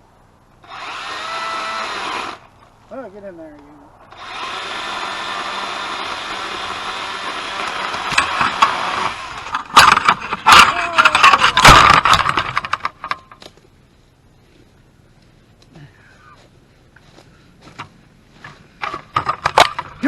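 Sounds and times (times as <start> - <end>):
chainsaw cutting limb: 4.1 - 13.6
limb cracking and crashing: 9.6 - 13.6.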